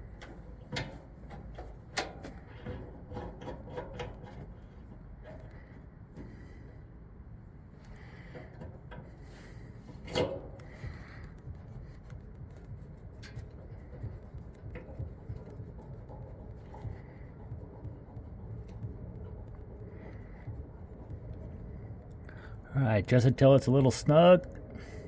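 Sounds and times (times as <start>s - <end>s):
metallic rubbing and ticks: 7.8s - 25.0s.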